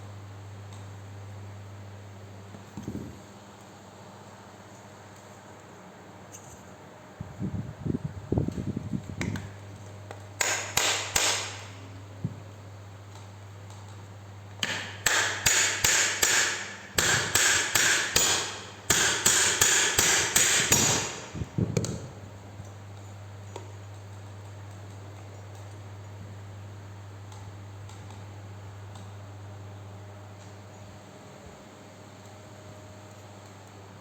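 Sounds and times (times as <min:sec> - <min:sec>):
hammer striking metal: 0:10.4 - 0:11.7, 0:14.6 - 0:21.3.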